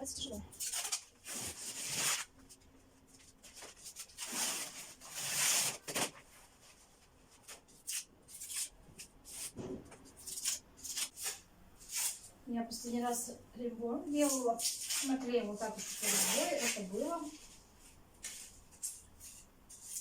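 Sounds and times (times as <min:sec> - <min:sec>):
wallpaper ripping: 0:00.5 - 0:02.4, 0:03.5 - 0:06.4, 0:07.5 - 0:09.6, 0:10.2 - 0:12.3, 0:14.2 - 0:17.3.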